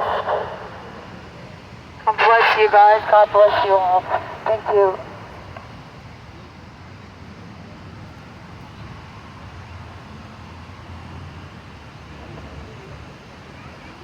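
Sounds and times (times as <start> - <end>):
low background rumble: 0.0 - 6.0.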